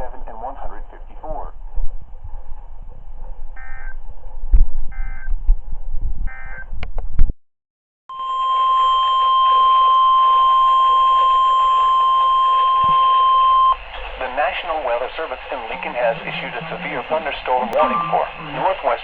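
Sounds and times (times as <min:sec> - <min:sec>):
radio hiss: 0:00.0 - 0:01.6, 0:13.9 - 0:19.0
steady warning alarm tone: 0:03.2 - 0:04.3, 0:04.9 - 0:05.3, 0:06.3 - 0:06.6, 0:08.1 - 0:13.9
digital data code bursts: 0:03.6 - 0:04.0.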